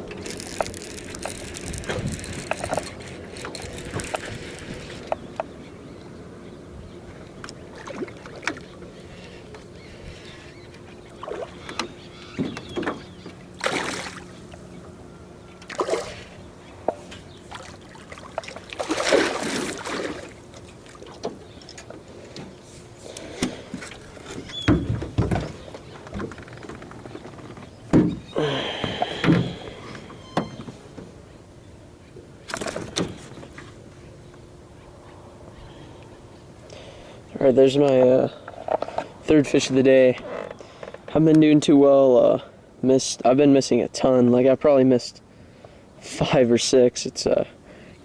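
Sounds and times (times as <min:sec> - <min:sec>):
faint steady hum: 0:00.0 - 0:48.0
water splashes: 0:07.6 - 0:08.8, 0:13.6 - 0:14.4, 0:15.7 - 0:16.3, 0:17.5 - 0:21.3.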